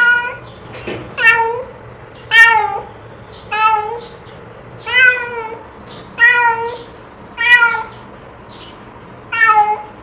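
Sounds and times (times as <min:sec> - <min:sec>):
cat meowing: 0:00.0 - 0:00.5, 0:01.2 - 0:01.7, 0:02.3 - 0:02.9, 0:03.5 - 0:04.2, 0:04.8 - 0:05.6, 0:06.2 - 0:08.0, 0:09.3 - 0:10.0.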